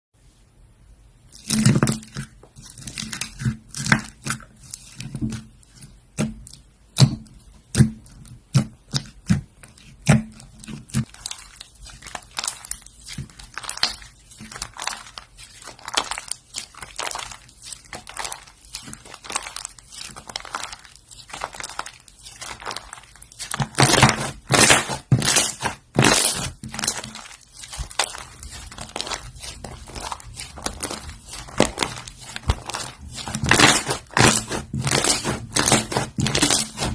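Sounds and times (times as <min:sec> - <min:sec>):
slime squished by hand: 0:01.4 - 0:36.9.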